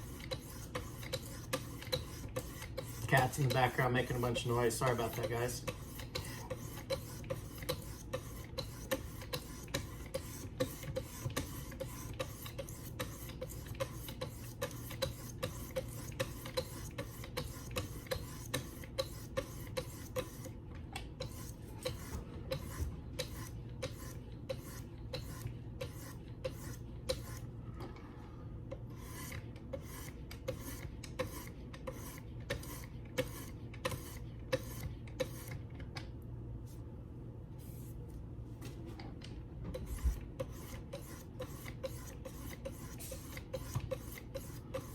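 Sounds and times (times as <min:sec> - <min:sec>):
knife scraping on sharpening stone: 0:00.0 - 0:04.5, 0:39.9 - 0:44.9
steady low hum: 0:00.0 - 0:44.9.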